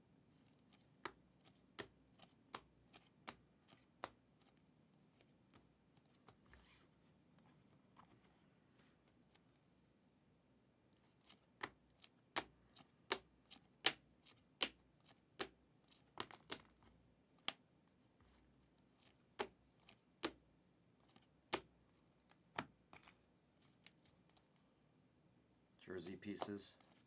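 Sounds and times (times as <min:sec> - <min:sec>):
cards tapping on a table: 0:26.0 - 0:26.7.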